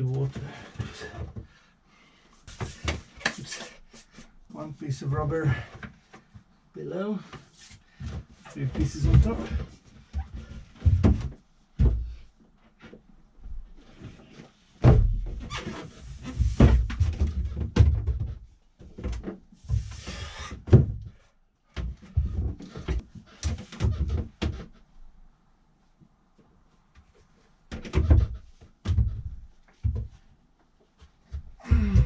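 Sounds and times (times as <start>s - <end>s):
heavy thuds and knocks: 14.8s - 15.5s, 16.2s - 21.2s, 31.3s - 32.0s.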